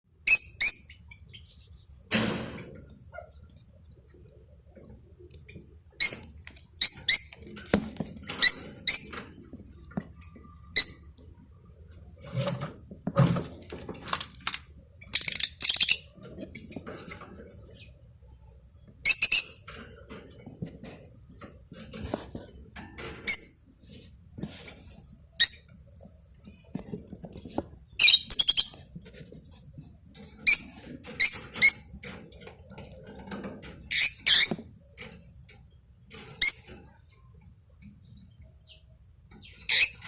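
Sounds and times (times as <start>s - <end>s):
rustling: 19.7s - 33.8s.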